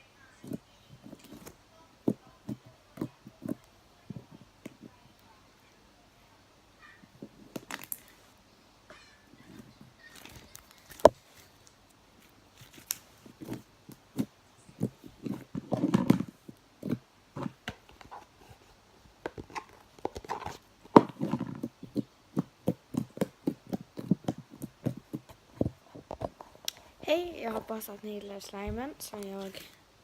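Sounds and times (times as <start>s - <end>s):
slime squelching: 9.3s - 18.6s, 19.3s - 29.8s.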